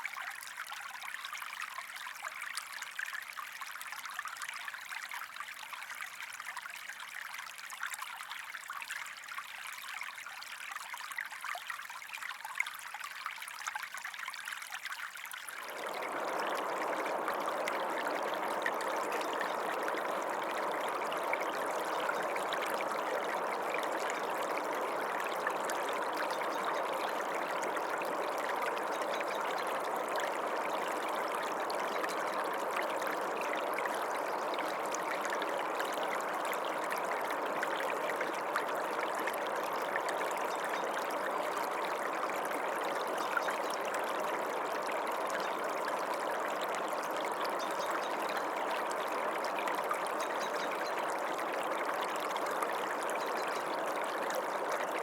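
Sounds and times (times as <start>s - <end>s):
creek water running: 13.4s - 55.0s.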